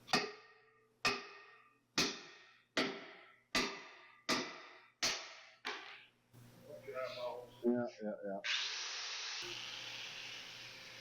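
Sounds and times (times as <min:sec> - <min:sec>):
hammer striking steel: 0:00.0 - 0:05.9.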